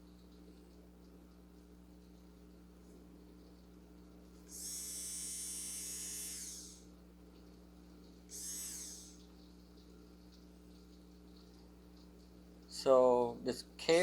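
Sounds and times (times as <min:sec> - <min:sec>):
nail drill whining: 0:04.5 - 0:06.8, 0:08.3 - 0:09.2.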